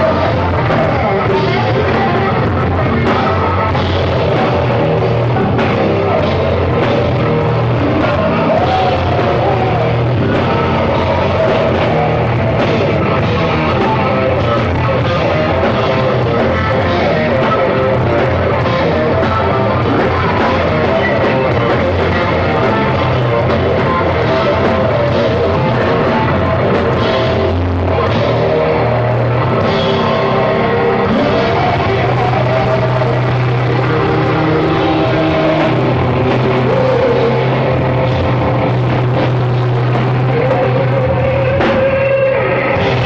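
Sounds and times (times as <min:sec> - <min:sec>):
rock band playing: 0:00.0 - 0:43.0.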